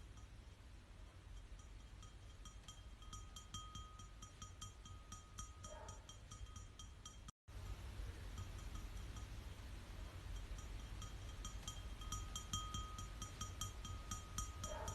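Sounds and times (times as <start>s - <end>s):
faint high metallic chiming: 1.4s - 14.9s
steady low hum: 7.5s - 14.9s.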